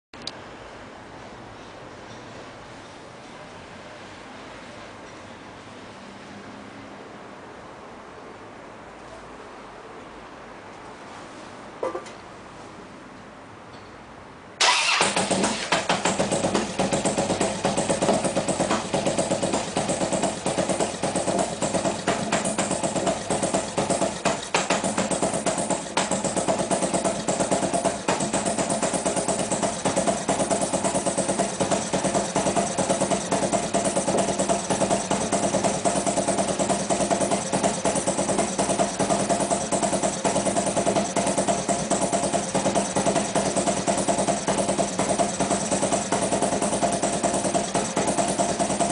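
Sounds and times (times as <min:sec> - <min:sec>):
motorcycle engine starting and idling: 0:14.6 - 0:48.9.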